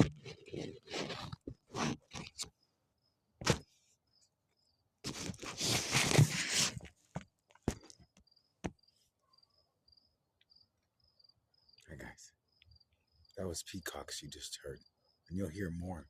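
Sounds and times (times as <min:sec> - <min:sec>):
crunching rustle: 0:00.0 - 0:02.5, 0:05.0 - 0:06.9
crickets chirping: 0:00.2 - 0:05.7, 0:07.2 - 0:16.0.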